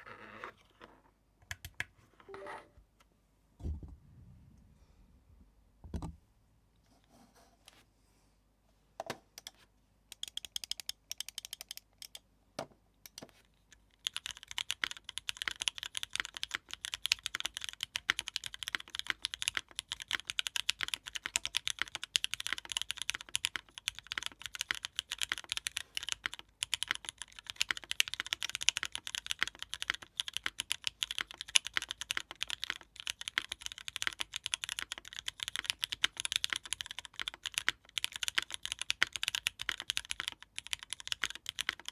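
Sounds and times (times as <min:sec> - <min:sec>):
mechanical keyboard typing: 0:09.4 - 0:12.2, 0:14.0 - 0:41.9.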